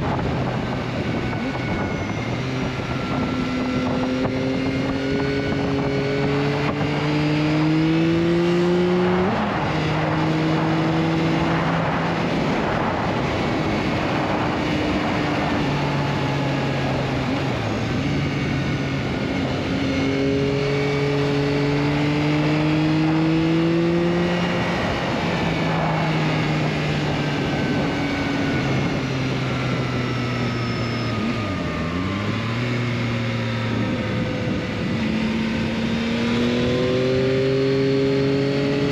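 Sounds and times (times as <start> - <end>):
motorcycle engine while riding: 0.0 - 38.9.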